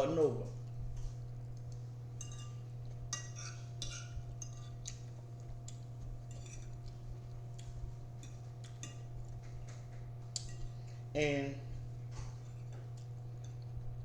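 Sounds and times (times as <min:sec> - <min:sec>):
low electrical hum: 0:00.0 - 0:14.0
fork clinking against plate: 0:02.2 - 0:07.0, 0:07.6 - 0:10.7.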